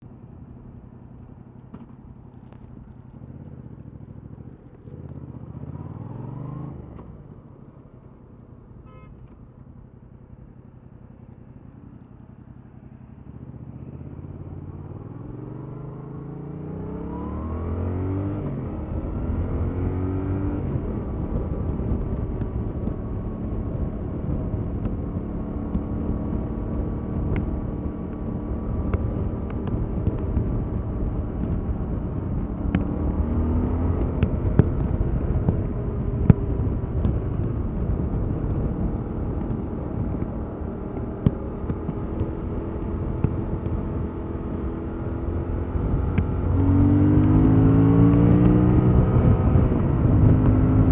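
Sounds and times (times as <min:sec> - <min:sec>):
motorcycle engine revving: 0:01.1 - 0:07.4, 0:10.0 - 0:50.9.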